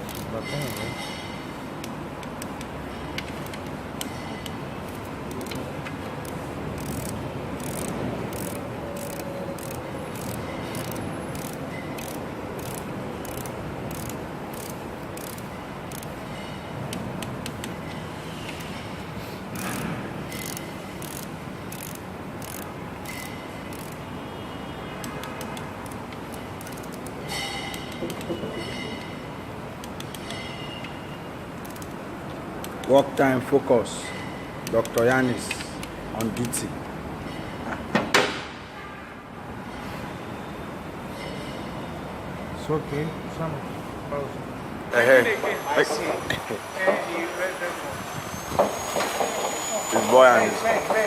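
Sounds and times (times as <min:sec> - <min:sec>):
ratchet wrench clicking: 0:00.0 - 0:18.8, 0:19.5 - 0:24.0, 0:25.0 - 0:29.2, 0:29.8 - 0:31.0, 0:31.6 - 0:33.0
steady background noise: 0:00.0 - 0:51.0.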